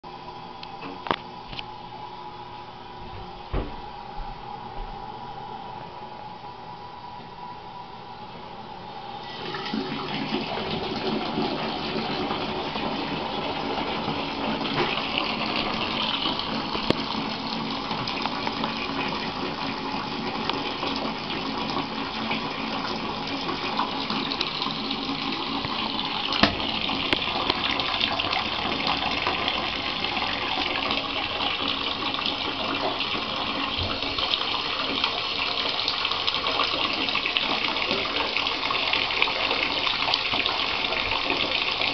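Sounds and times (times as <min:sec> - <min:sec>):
bathtub tap turning on: 0:03.5 - 0:03.9, 0:25.6 - 0:28.2
water running into tub: 0:09.1 - 0:41.9.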